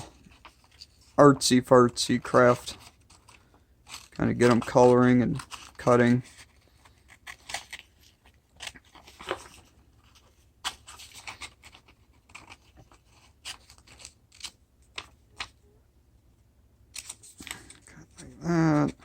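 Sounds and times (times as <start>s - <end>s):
scissors snipping paper: 2.8s - 5.8s, 7.1s - 9.3s.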